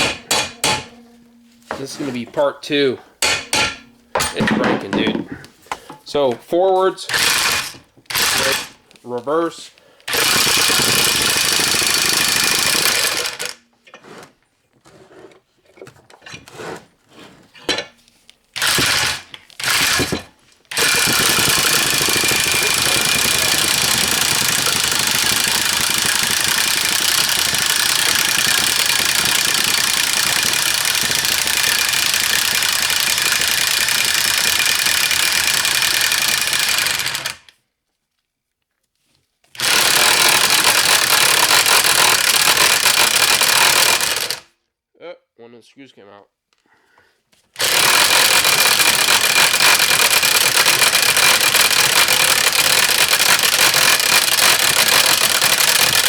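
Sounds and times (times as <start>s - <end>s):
ratchet mechanism chattering buzz: 7.1s - 8.8s, 10.1s - 13.6s, 18.6s - 37.5s, 39.6s - 44.4s, 47.6s - 56.0s.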